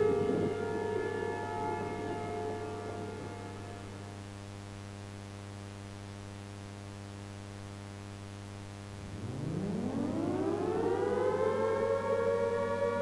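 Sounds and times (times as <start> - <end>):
high ringing tone: 0.0 - 4.5
low buzzing drone: 0.0 - 4.9, 9.0 - 13.0.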